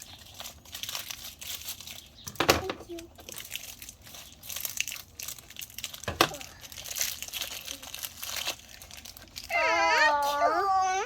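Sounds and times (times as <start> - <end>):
crinkly wrapping rustling and tearing: 0.0 - 11.0
child's voice: 2.5 - 3.4, 6.2 - 6.7, 9.6 - 11.0.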